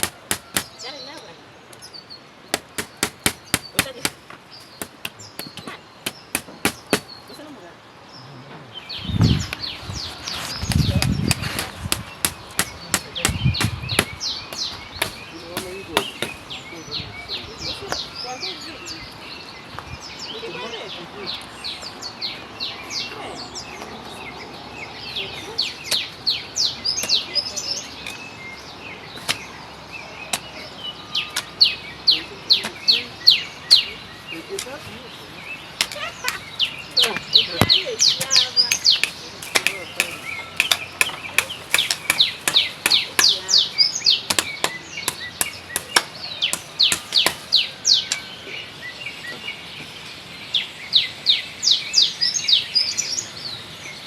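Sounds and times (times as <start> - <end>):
sharp knocks: 0.0 - 0.8, 2.6 - 7.2, 10.7 - 16.5, 37.6 - 43.4, 44.3 - 47.6
hand tool chopping into soil: 0.0 - 1.8, 2.5 - 7.2, 10.7 - 16.6, 29.2 - 29.5, 35.8 - 43.6, 44.3 - 48.2
birds chirping: 0.0 - 54.0.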